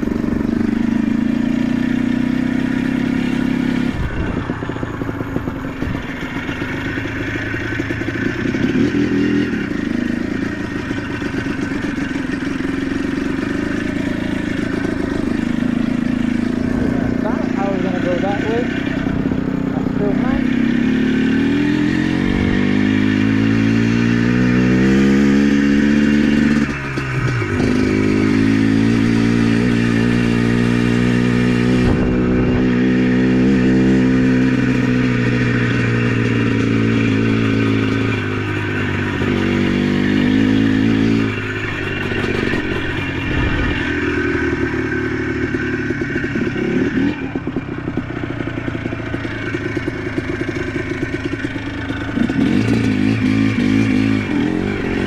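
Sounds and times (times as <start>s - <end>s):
atv engine revving: 0.0s - 55.0s
person talking: 17.0s - 19.0s, 19.6s - 20.6s.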